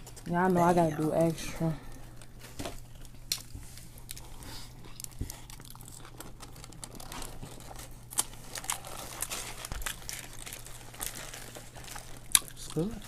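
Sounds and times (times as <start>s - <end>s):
paper wrapper crinkling: 2.0s - 13.0s.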